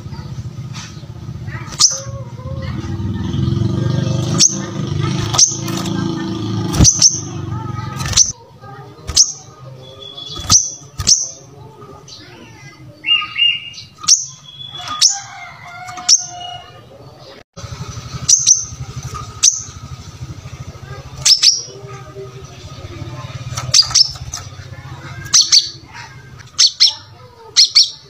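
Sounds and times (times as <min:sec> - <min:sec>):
bird chirping: 0:00.0 - 0:28.0
low whistled bird notes: 0:09.1 - 0:11.3, 0:13.0 - 0:15.3.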